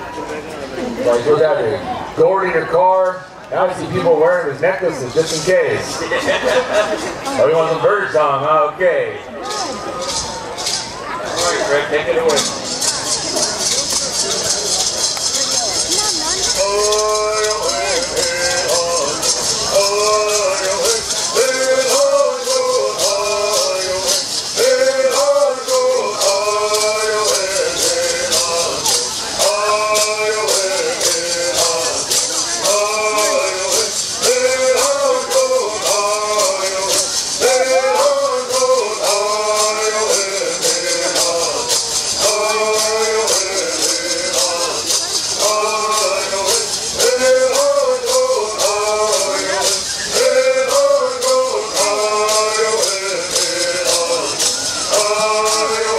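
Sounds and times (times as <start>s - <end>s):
gourd rattles shaking: 12.3s - 55.9s
men singing: 16.2s - 55.9s.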